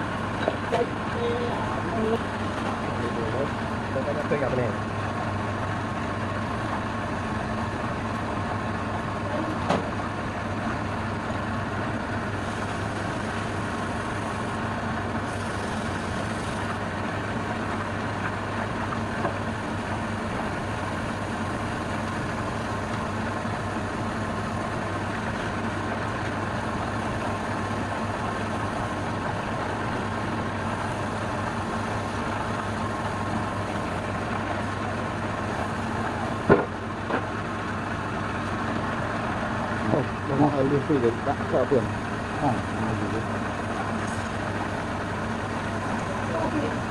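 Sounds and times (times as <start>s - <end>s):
wood lathe motor humming: 12.0s - 37.0s.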